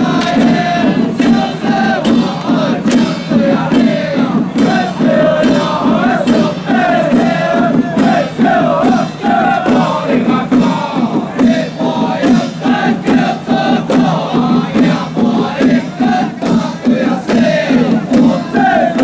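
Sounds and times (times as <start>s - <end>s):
crowd noise: 0.0s - 19.0s
drum and cymbal strikes: 0.0s - 19.0s
procession band music: 0.0s - 19.0s.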